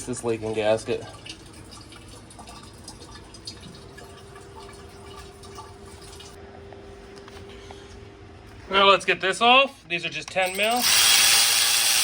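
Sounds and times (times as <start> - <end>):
water trickling and dripping: 0.0 - 6.4.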